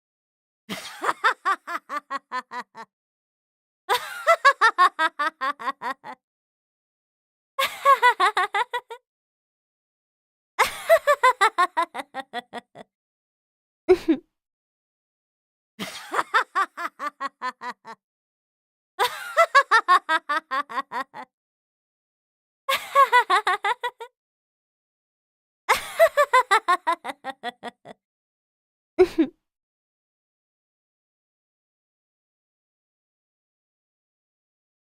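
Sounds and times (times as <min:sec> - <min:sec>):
woman laughing: 0:00.7 - 0:02.9, 0:03.9 - 0:06.2, 0:07.6 - 0:09.0, 0:10.6 - 0:12.8, 0:15.8 - 0:18.0, 0:19.0 - 0:21.3, 0:22.7 - 0:24.1, 0:25.7 - 0:28.0, 0:29.0 - 0:29.3.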